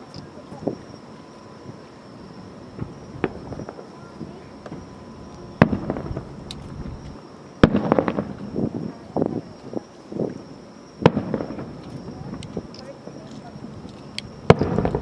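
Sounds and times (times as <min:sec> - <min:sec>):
loud firework booms: 0:02.8 - 0:07.0, 0:07.6 - 0:09.4, 0:11.0 - 0:12.7, 0:14.4 - 0:15.0
small firework pops: 0:04.6 - 0:08.5, 0:11.0 - 0:12.9, 0:13.9 - 0:15.0.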